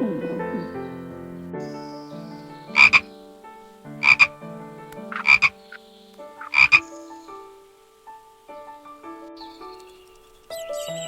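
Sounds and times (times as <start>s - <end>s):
frog croaking: 2.7s - 3.1s, 3.9s - 4.4s, 5.0s - 6.9s.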